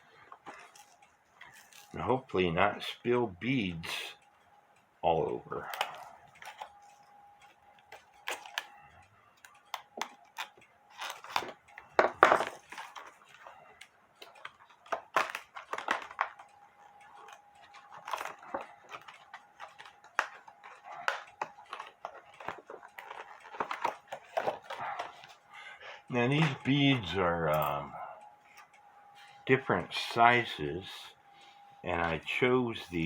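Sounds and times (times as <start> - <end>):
plastic package crinkling: 0.4 - 2.0, 14.2 - 25.4.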